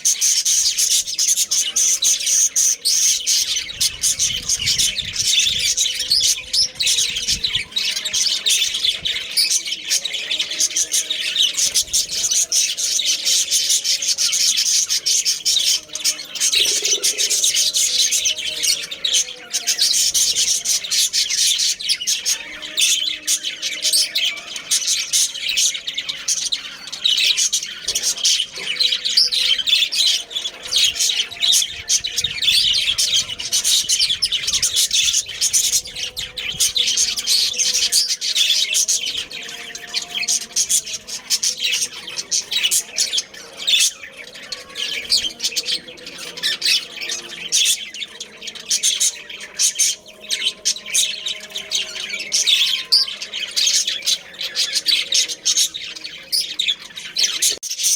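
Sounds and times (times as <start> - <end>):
budgerigars chattering and chirping: 0.0 - 57.9.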